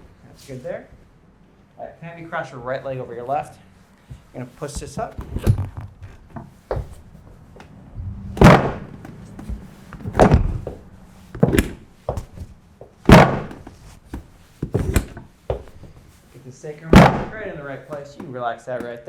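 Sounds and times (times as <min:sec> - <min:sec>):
heavy thuds on treatment table: 0:08.0 - 0:12.5, 0:16.9 - 0:18.3.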